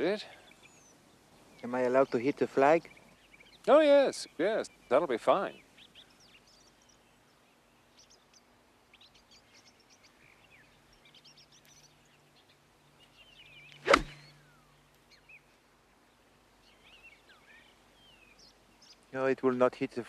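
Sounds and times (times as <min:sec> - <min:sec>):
birds chirping: 0:00.0 - 0:20.0
golf club striking ball: 0:13.8 - 0:14.3.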